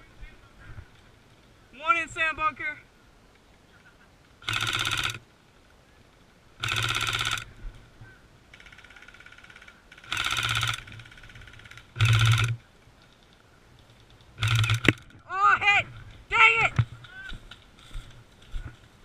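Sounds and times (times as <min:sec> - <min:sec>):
airsoft gun full-auto bursts: 0:04.4 - 0:05.2, 0:06.6 - 0:07.5, 0:08.6 - 0:12.6, 0:14.4 - 0:15.0
fainter gunfire burst: 0:04.4 - 0:05.2, 0:06.6 - 0:07.4, 0:08.6 - 0:12.6, 0:14.4 - 0:14.9.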